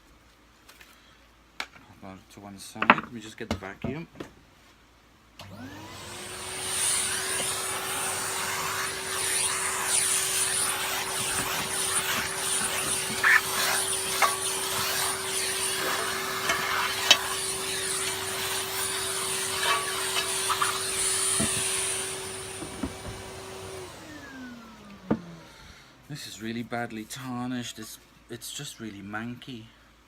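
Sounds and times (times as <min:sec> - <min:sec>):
motor winding down whine: 0:05.4 - 0:25.6
vacuum cleaner running: 0:05.4 - 0:25.9.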